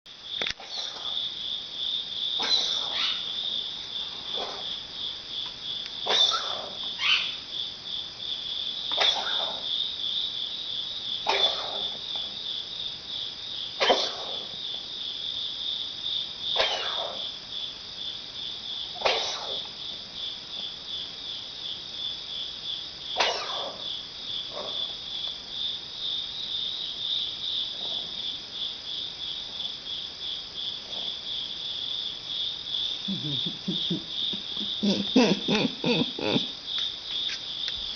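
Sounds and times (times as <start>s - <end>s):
insect chirping: 0.1s - 37.9s
cat coughing: 11.3s - 11.8s, 13.8s - 14.3s, 16.6s - 17.0s, 23.2s - 23.6s, 33.1s - 36.5s.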